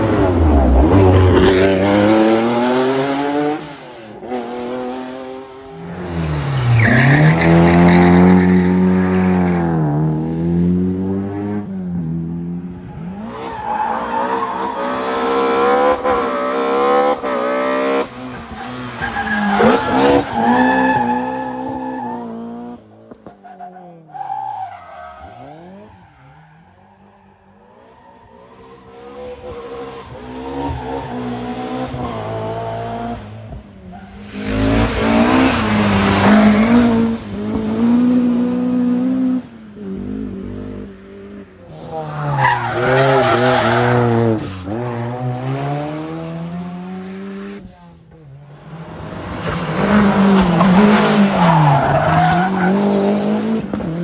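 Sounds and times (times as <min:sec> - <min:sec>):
rally car engines revving: 0:00.0 - 0:54.0
car passing by: 0:34.2 - 0:38.4.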